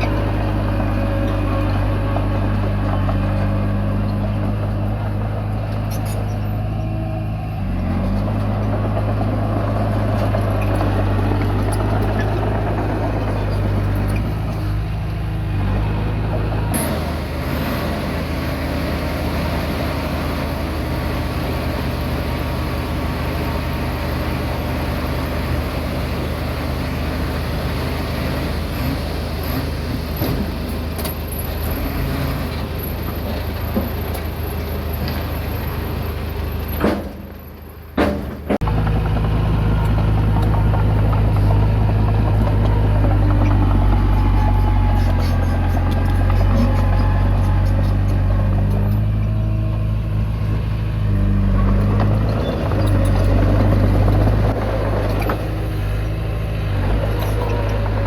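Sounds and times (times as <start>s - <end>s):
bulldozer diesel engine under load: 0.0s - 58.0s.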